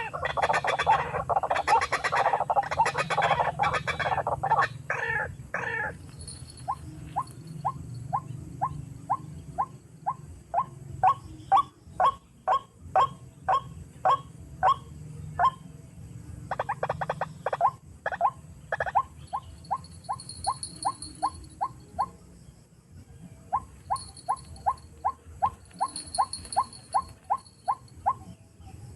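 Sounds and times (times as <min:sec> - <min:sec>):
waterhen calling: 0:00.0 - 0:05.9
chattering bird notes: 0:00.0 - 0:14.8, 0:16.5 - 0:22.2, 0:23.5 - 0:28.4.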